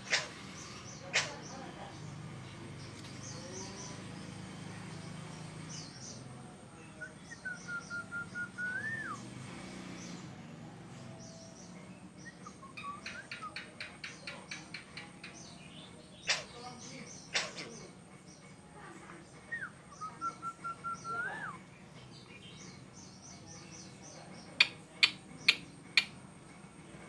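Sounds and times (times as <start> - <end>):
bird chirping: 11.1 - 18.4, 19.4 - 26.2.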